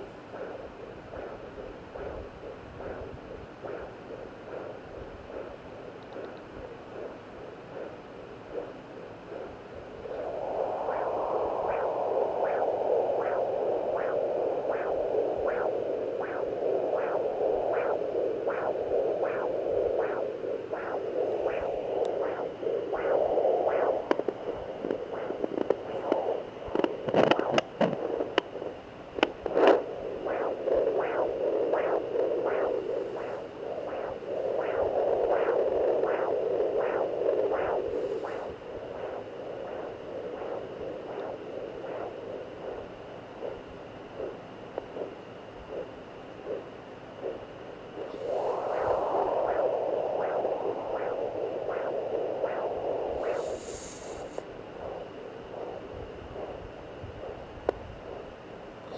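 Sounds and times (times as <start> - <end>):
doppler whooshing heartbeat pulse: 0.0 - 58.4
probe scratching and scraping: 53.2 - 56.6.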